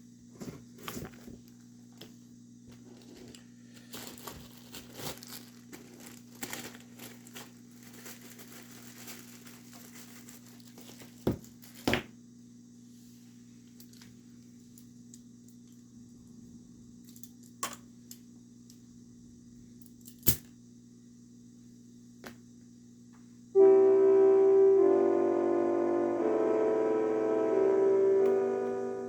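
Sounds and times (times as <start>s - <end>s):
steady low hum: 0.0s - 29.0s
paper rustling and crinkling: 0.4s - 11.9s.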